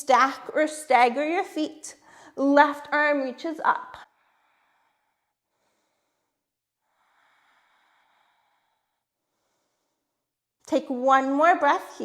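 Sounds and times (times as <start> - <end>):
faint slow breaths: 4.0 - 10.4.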